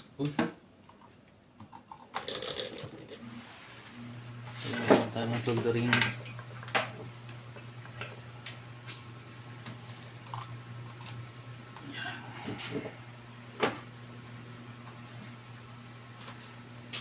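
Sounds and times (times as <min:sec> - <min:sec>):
low electrical hum: 0:00.0 - 0:17.0.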